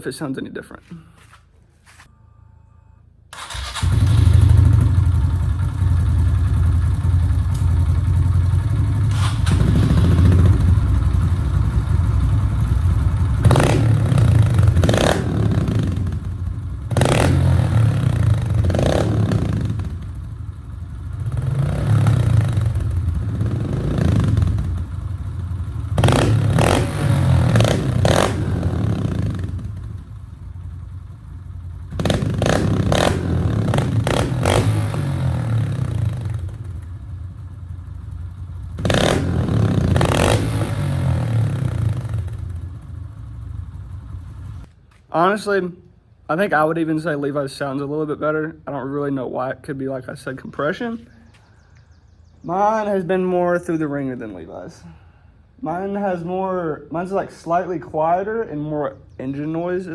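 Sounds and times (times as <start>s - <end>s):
dirt bike engine revving: 3.4s - 36.9s, 38.0s - 43.0s.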